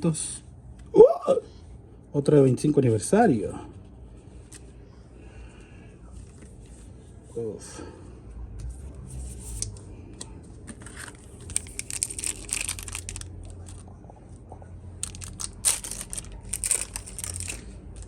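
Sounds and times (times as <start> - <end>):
foil wrapper tearing and crinkling: 10.8 - 13.8, 15.0 - 18.0.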